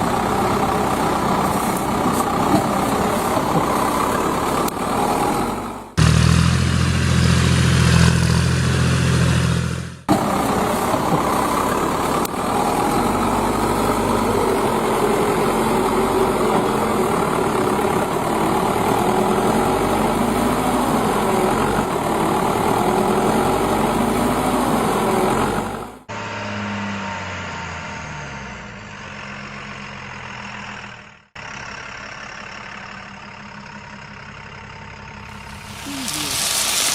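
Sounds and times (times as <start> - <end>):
heavy diesel engines running: 0.0 - 36.9.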